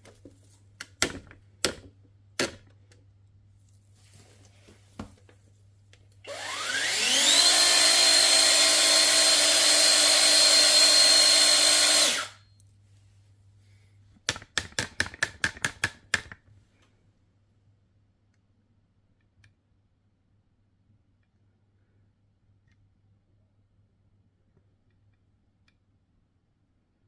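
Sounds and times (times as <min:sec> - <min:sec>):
electric motor whining: 0:06.3 - 0:12.4.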